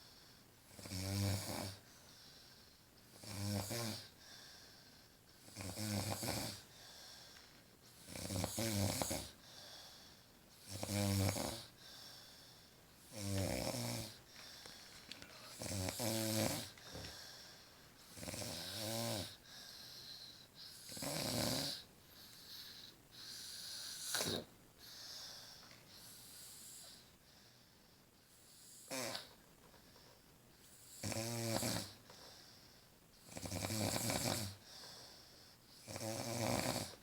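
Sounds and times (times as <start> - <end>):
woman snoring: 0.7 - 1.8, 5.5 - 6.6, 8.0 - 9.4, 10.6 - 11.7, 13.1 - 14.2, 15.2 - 16.8, 18.1 - 19.4, 20.8 - 21.8, 30.9 - 32.0, 33.3 - 34.6, 35.8 - 37.0.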